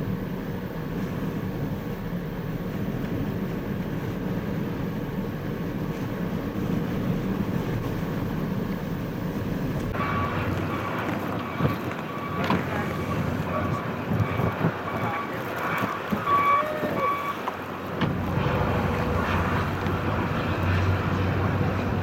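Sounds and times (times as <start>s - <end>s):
faint steady whine: 0.0s - 22.0s
vehicle running rumble: 0.0s - 22.0s.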